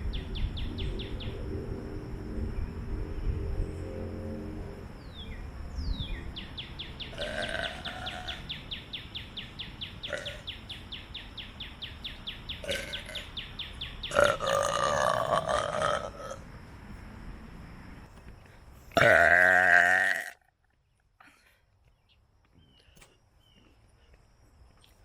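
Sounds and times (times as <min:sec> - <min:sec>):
rapid even chirping: 0:05.0 - 0:19.0
person burping: 0:07.2 - 0:08.4, 0:10.1 - 0:10.4, 0:12.6 - 0:13.3, 0:14.1 - 0:16.4, 0:19.0 - 0:20.4.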